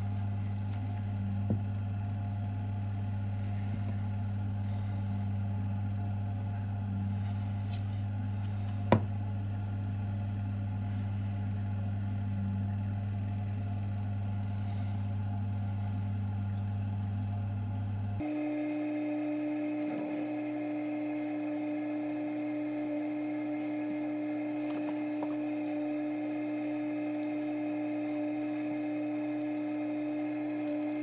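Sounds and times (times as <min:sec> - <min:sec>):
low hum: 0:18.0 - 0:31.0
higher-pitched hum: 0:18.2 - 0:31.0.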